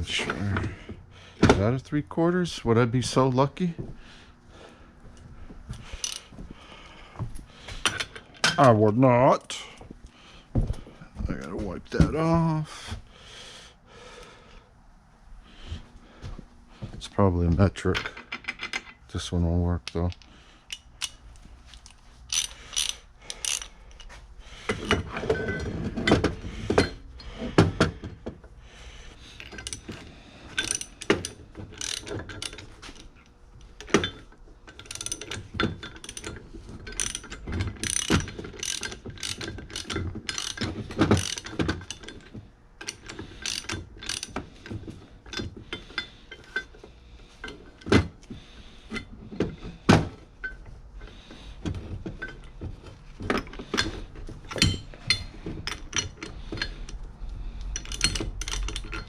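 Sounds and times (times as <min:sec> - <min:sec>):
tools clinking: 0:05.7 - 0:06.3, 0:17.8 - 0:28.1, 0:29.4 - 0:48.0, 0:52.0 - 0:57.0, 0:57.6 - 0:59.0
ratchet wrench clicking: 0:06.0 - 0:06.2, 0:21.8 - 0:24.1, 0:30.6 - 0:32.6, 0:34.8 - 0:42.2, 0:42.8 - 0:44.4, 0:57.7 - 0:59.0.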